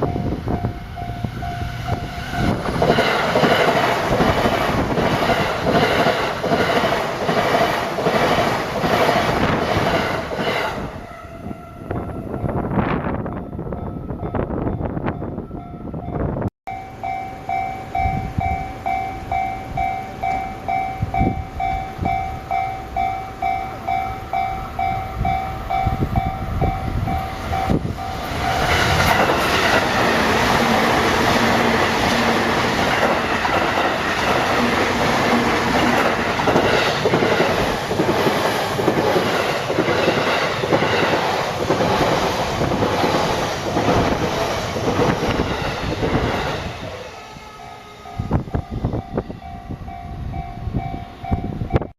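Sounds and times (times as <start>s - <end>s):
level crossing warning bell: 0.0s - 4.4s, 11.5s - 28.8s, 46.3s - 51.9s
train wheels clattering over rails: 1.5s - 10.8s, 27.5s - 46.9s.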